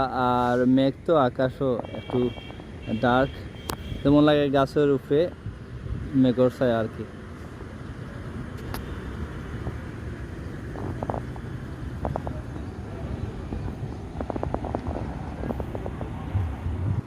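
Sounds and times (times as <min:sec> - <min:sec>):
low outdoor rumble: 0:04.5 - 0:17.0.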